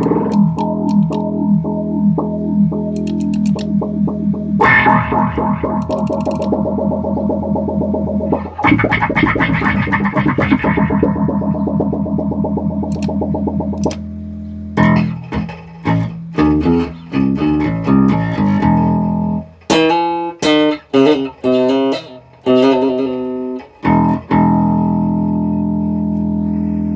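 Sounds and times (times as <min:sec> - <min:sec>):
bass guitar through filter: 0:00.0 - 0:26.9.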